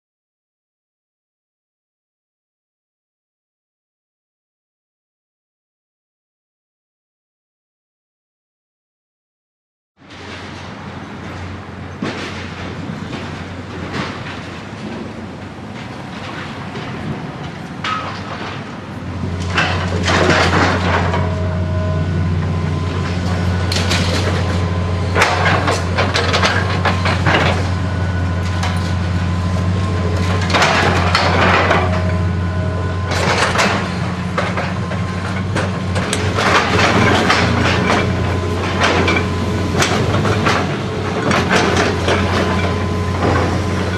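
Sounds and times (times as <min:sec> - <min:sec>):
heavy machinery engine running: 0:10.0 - 0:43.9
crunching and clattering debris: 0:11.2 - 0:18.8, 0:19.4 - 0:21.5, 0:22.8 - 0:43.9.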